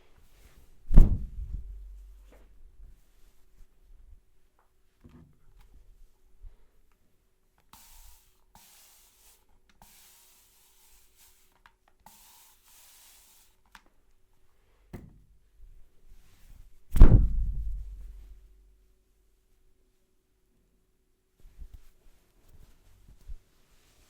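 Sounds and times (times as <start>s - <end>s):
loud thump: 0.9s - 2.4s, 17.0s - 18.2s.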